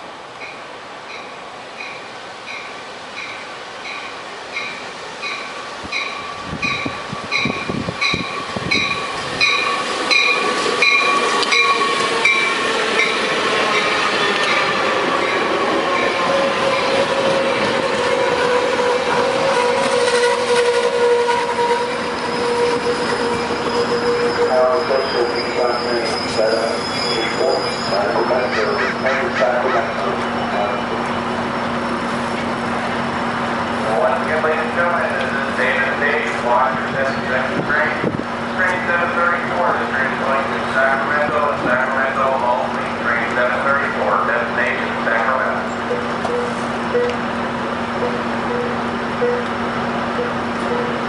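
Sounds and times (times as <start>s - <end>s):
train passing: 0.0s - 51.0s.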